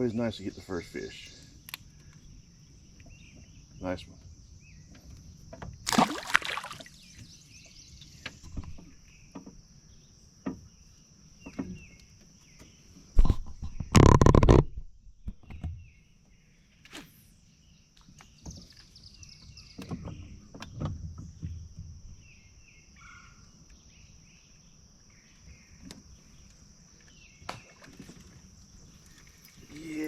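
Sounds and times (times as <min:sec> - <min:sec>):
insects buzzing: 0:00.0 - 0:13.2, 0:23.5 - 0:30.0
faint bird chirps: 0:15.4 - 0:30.0.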